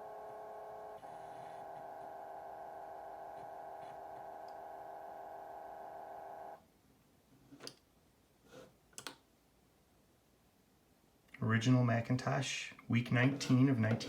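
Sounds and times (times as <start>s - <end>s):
computer hum of several tones: 0.0s - 6.6s
soft clicks: 8.9s - 9.2s.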